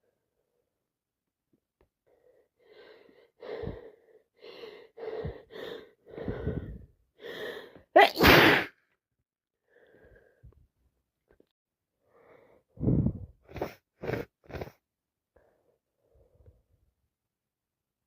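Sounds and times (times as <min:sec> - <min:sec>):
woman gasping: 0:02.8 - 0:08.2
woman sneezing: 0:08.0 - 0:08.8.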